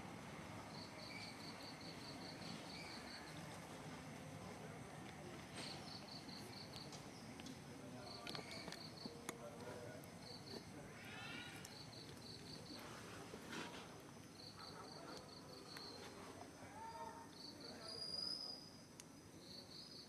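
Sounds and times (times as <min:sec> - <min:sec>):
outdoor background noise: 0:00.0 - 0:20.0
insects chirping in pulses: 0:00.2 - 0:04.3, 0:05.6 - 0:07.4, 0:10.0 - 0:13.0, 0:14.0 - 0:20.0.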